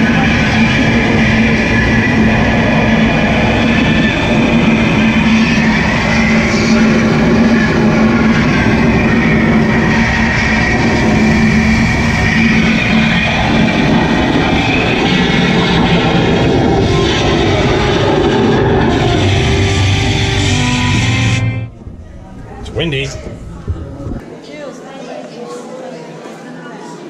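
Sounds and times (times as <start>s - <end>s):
dense steady roar: 0.0s - 24.2s
loud rock music: 4.4s - 21.7s.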